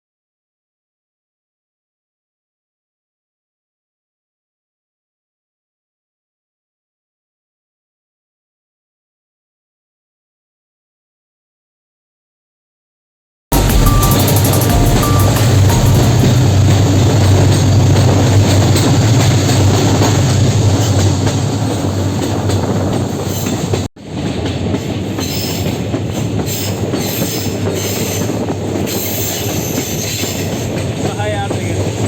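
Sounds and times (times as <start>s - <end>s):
train rumbling on rails: 13.5s - 32.0s.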